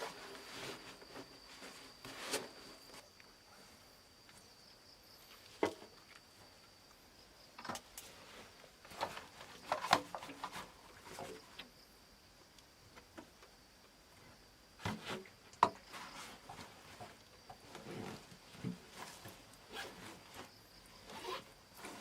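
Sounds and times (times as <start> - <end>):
handling knocks and rustles: 0.0 - 3.2, 7.6 - 11.6, 14.8 - 22.0
insect droning: 0.0 - 22.0.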